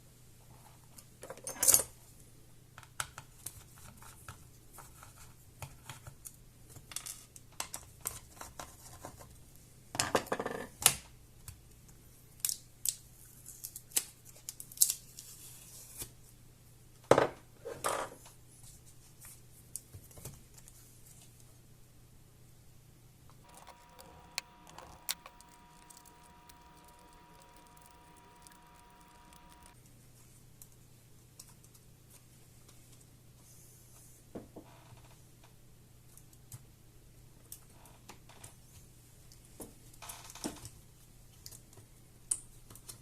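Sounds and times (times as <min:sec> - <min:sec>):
small plastic and metal clicks: 0:23.4 - 0:29.8.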